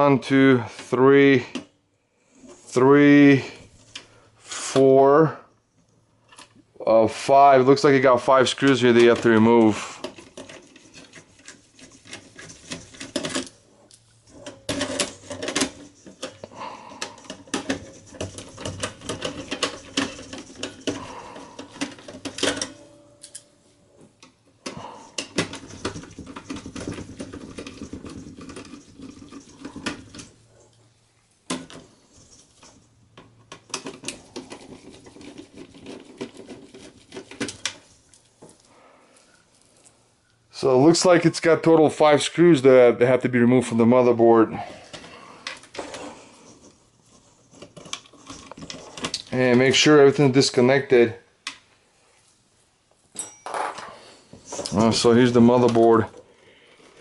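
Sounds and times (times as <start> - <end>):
screwdriver clicks and scrapes: 8.6 - 23.5, 47.4 - 49.4.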